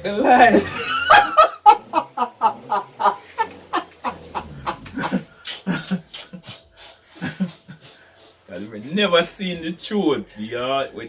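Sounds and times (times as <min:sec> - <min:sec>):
person laughing hard: 0:00.3 - 0:08.0.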